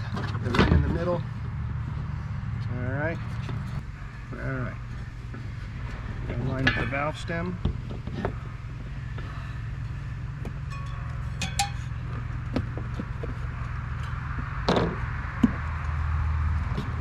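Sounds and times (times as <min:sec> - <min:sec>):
tire rustling on rim: 0:00.0 - 0:17.0
steady low hum: 0:00.8 - 0:17.0
light clicks and clinks: 0:09.8 - 0:13.0.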